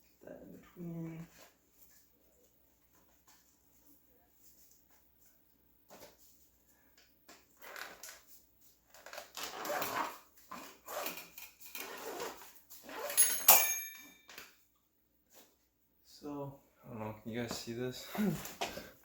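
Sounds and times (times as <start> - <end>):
sharp metallic clink: 13.1 - 14.3.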